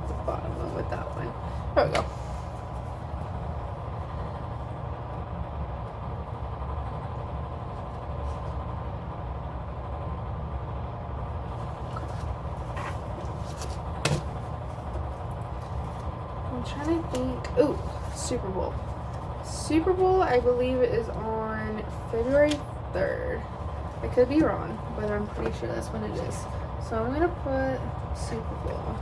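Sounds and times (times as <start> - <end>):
low background hum: 0.0 - 29.0.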